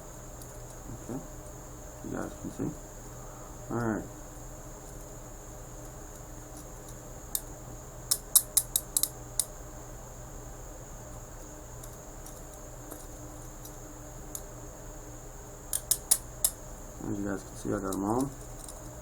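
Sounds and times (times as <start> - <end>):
handcuffs ratcheting clicks: 8.1 - 9.1, 15.7 - 16.6.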